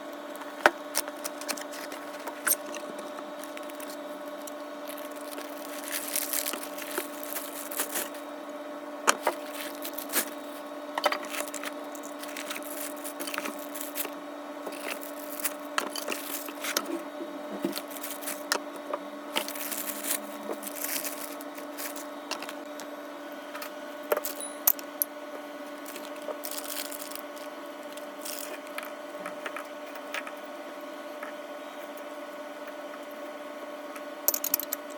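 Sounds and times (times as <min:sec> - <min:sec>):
steady low hum: 0:00.0 - 0:34.9
packaging rustling: 0:00.4 - 0:08.3, 0:09.1 - 0:22.8, 0:24.2 - 0:24.9, 0:25.7 - 0:29.0
small pieces clicking and knocking: 0:34.3 - 0:34.9.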